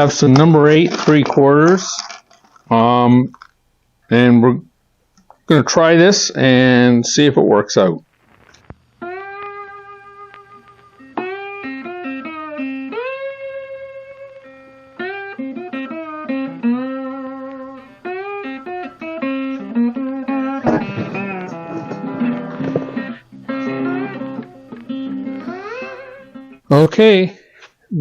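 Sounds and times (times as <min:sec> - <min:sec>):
guitar playing slow melody: 0:09.0 - 0:26.7.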